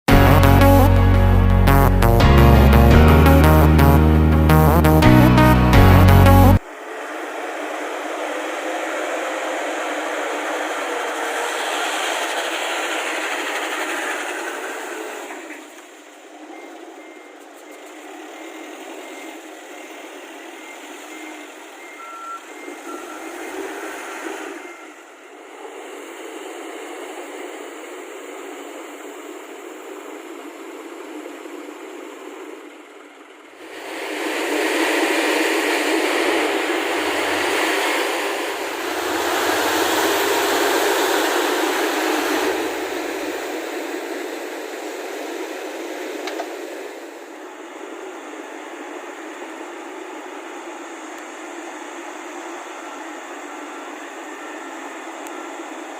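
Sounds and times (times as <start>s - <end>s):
diesel machinery engines running: 0.0s - 55.9s
reversing alarm beeping: 16.3s - 25.2s.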